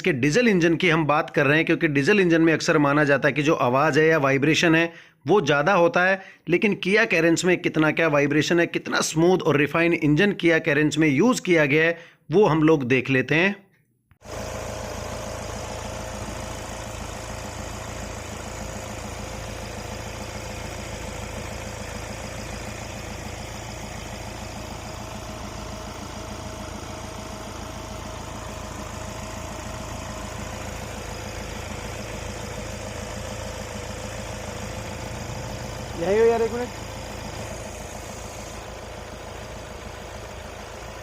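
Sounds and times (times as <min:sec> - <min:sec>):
diesel engine idling: 0:14.2 - 0:41.0.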